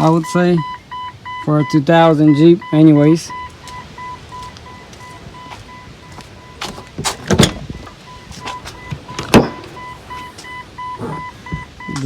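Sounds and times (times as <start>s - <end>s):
car warning chime beeping: 0.0s - 12.0s
liftgate clunks and rattles: 6.6s - 10.3s.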